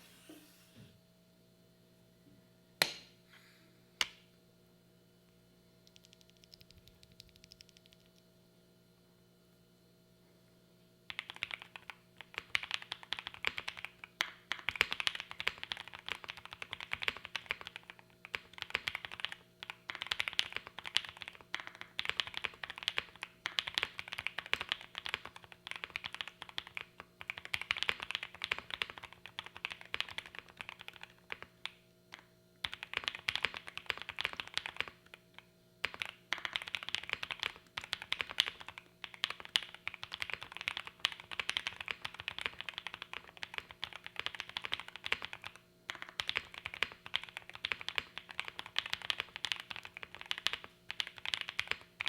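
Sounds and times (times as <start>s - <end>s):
mechanical keyboard typing: 11.1s - 52.0s.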